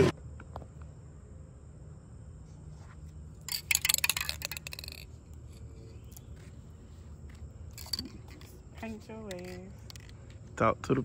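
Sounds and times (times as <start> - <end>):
faint low hum: 0.0 - 11.0
rapid rattling clicks: 3.5 - 5.6.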